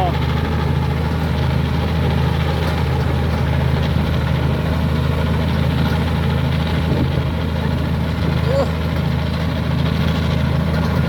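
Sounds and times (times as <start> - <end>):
bulldozer diesel engine running: 0.0 - 11.0.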